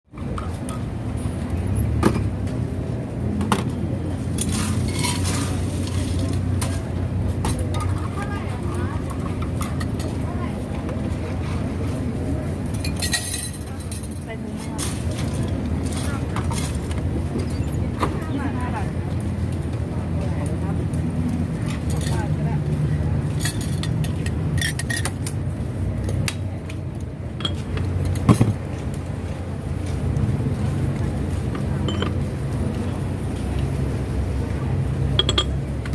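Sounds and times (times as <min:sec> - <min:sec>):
kitchenware clinking and clattering: 0:04.4 - 0:06.8, 0:12.8 - 0:16.8, 0:23.3 - 0:25.4, 0:31.8 - 0:32.2, 0:35.2 - 0:35.6.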